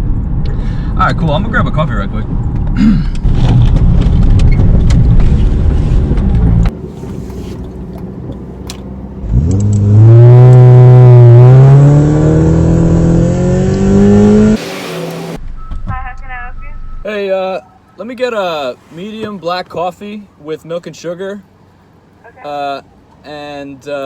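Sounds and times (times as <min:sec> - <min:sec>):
car driving with low rumble: 0:00.0 - 0:23.9
car engine revving: 0:05.4 - 0:15.4.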